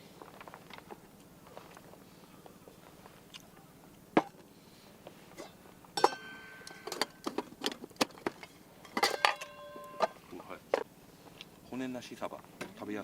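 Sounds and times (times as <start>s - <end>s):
faint chewing: 0.2s - 4.0s
ringing clink of tableware: 6.0s - 7.1s, 9.0s - 10.2s.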